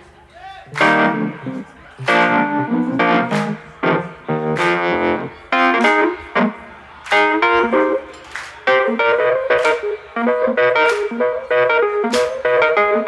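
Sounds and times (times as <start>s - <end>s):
guitar chord stabs: 0.7s - 8.1s.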